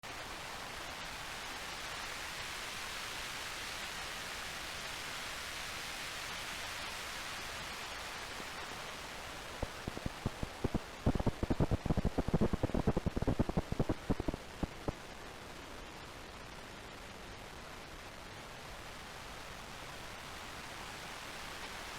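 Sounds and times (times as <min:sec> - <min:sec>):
synthesized rain hiss: 0:00.0 - 0:21.9
low crackling pops: 0:08.6 - 0:18.1.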